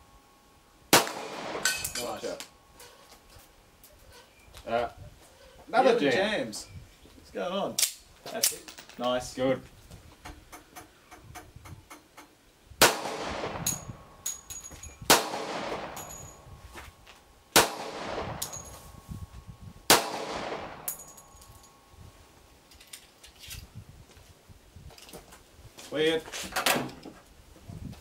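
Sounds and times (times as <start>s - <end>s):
pistol shots with ringing tail: 0.9s - 2.4s, 12.8s - 16.6s, 17.5s - 21.9s.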